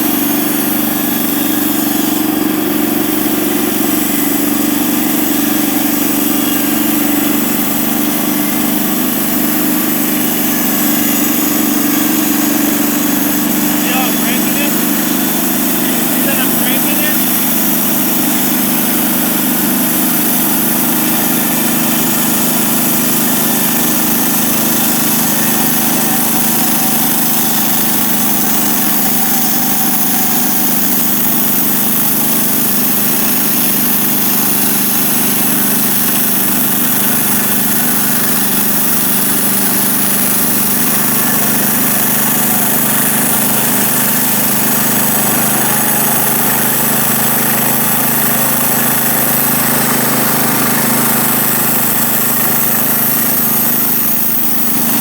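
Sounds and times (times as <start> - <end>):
engine running steadily: 0.0 - 55.0
sawmill saw cutting: 0.0 - 55.0.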